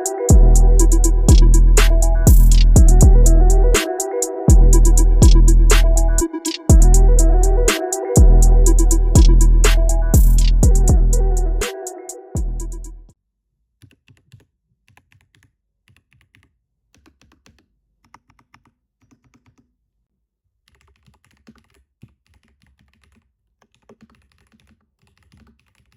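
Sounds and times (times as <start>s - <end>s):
burst of music: 0.0s - 12.8s.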